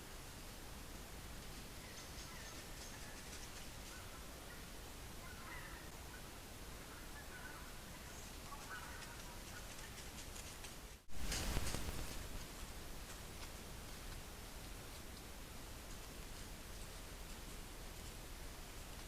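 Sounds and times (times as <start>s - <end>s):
background hiss: 0.0s - 19.0s
faint bird calls: 1.7s - 10.2s.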